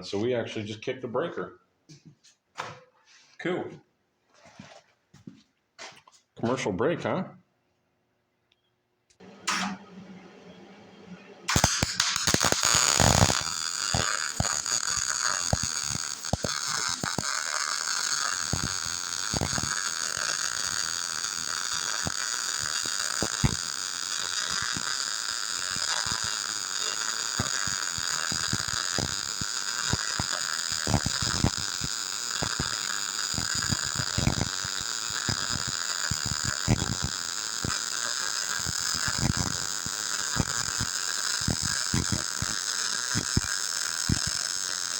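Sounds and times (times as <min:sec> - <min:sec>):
welding pops: 0:09.1 - 0:10.0, 0:11.5 - 0:44.9
arc welding crackling hiss: 0:11.5 - 0:44.9.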